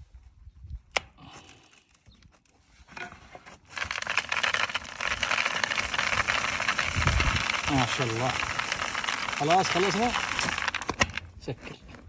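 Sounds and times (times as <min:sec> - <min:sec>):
grain pouring into bin: 0:03.7 - 0:11.2.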